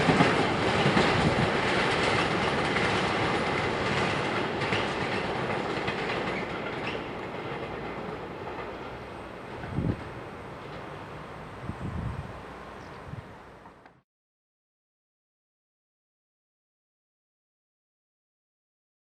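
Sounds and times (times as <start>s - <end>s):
train wheels clattering over rail joints: 0.0s - 11.4s.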